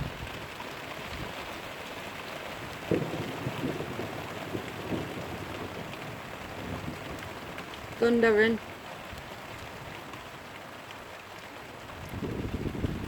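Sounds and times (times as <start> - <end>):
rain falling: 0.0 - 13.0.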